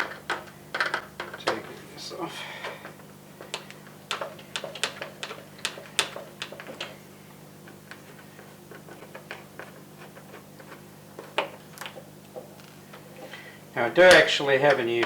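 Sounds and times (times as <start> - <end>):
plastic parts clicking: 0.0 - 1.8, 2.6 - 7.0.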